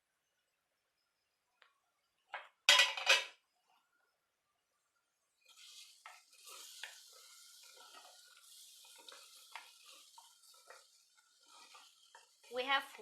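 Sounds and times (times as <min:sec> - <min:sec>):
gravy sizzling in a pot: 0:02.1 - 0:13.0
spoon scraping and clicking: 0:06.0 - 0:12.4.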